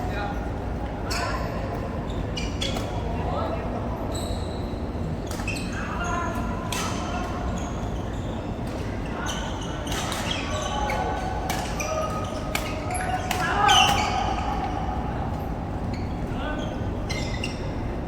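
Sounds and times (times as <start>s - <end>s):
voices in a large hall: 0.0s - 18.0s
rackets striking shuttlecock: 9.8s - 14.7s.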